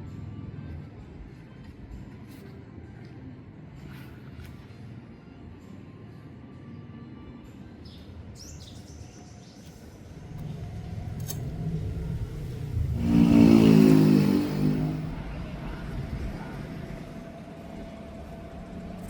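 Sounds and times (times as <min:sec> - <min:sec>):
vehicle engine passing by: 0:10.2 - 0:17.2.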